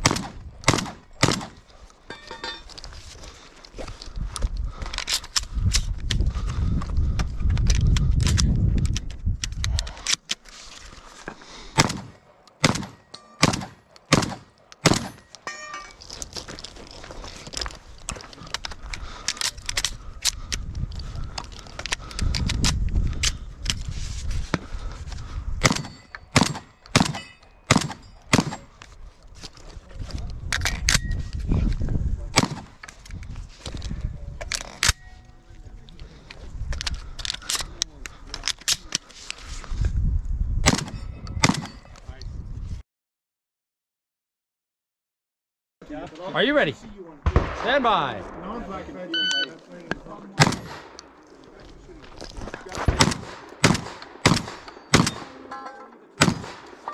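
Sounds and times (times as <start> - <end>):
shotgun shots: 0.0 - 1.6, 11.8 - 15.3, 25.6 - 28.7, 32.4 - 32.8, 40.7 - 41.7, 47.2 - 49.0, 50.4 - 51.0, 52.8 - 55.5, 56.2 - 56.9
wind buffeting microphone: 3.8 - 10.1, 17.2 - 26.0, 28.0 - 34.9, 35.5 - 38.3, 39.4 - 42.8
gun handling clicks: 4.4 - 6.2, 7.6 - 10.5, 17.5 - 23.8, 36.3 - 39.4, 49.9 - 51.2.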